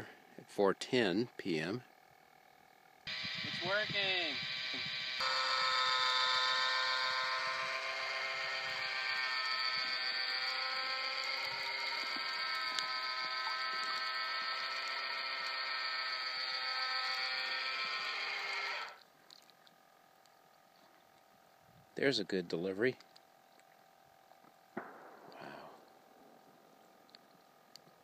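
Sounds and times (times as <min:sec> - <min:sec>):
fish feeder motor buzzing: 0:02.0 - 0:19.0.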